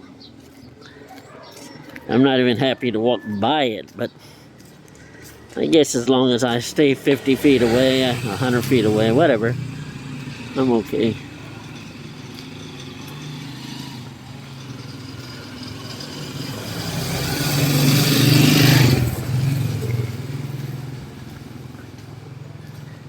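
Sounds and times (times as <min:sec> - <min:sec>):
traffic engine hum: 0:03.6 - 0:23.0
vehicle passing close by: 0:06.2 - 0:23.0.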